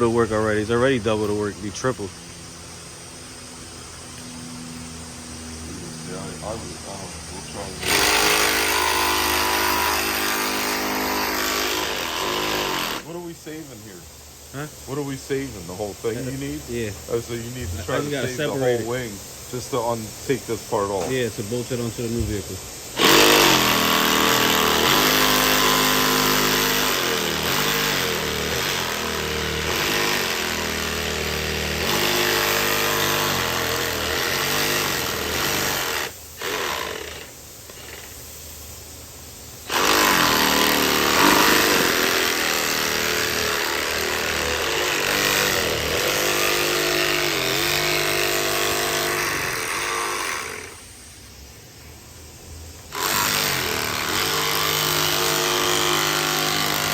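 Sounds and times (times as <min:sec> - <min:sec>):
power tool motor running: 0:06.2 - 0:13.1, 0:23.0 - 0:38.2, 0:39.6 - 0:50.9, 0:52.9 - 0:56.9.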